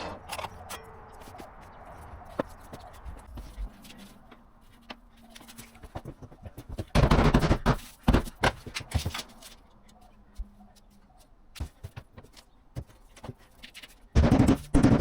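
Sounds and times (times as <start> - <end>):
floor boards knocking and scraping: 5.9 - 9.2.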